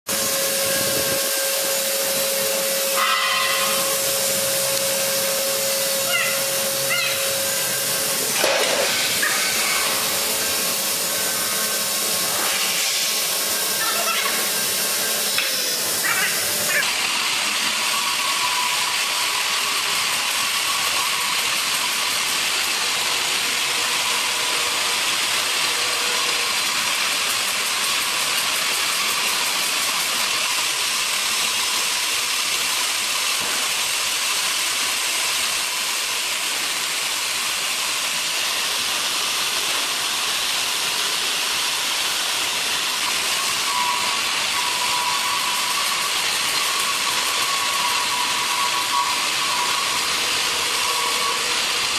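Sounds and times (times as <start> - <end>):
sawmill cutting log: 0.1 - 51.9.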